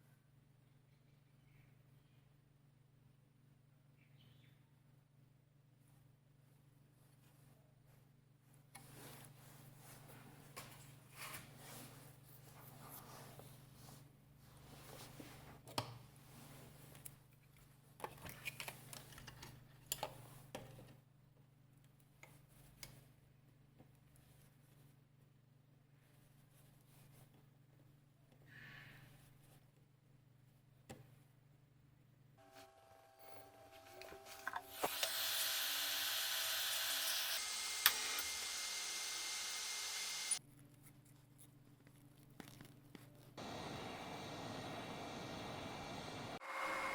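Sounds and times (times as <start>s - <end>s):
rushing air hiss: 43.4s - 46.9s.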